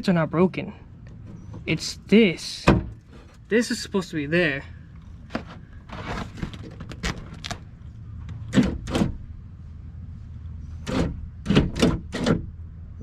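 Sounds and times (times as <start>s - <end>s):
steady low hum: 0.0s - 13.0s
door mechanism clunks and knocks: 2.6s - 3.3s, 8.3s - 9.3s, 10.8s - 12.6s.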